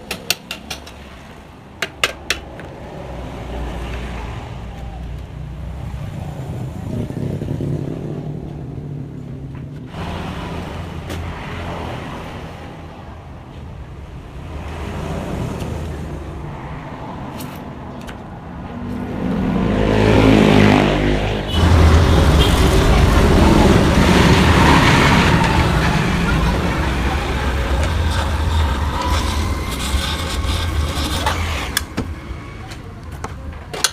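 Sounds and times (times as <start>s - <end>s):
vehicle engine revving: 18.9s - 33.1s.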